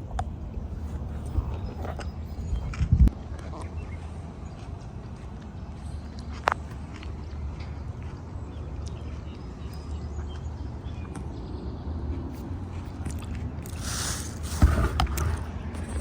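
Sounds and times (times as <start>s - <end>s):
steady low rumble: 0.0s - 9.4s.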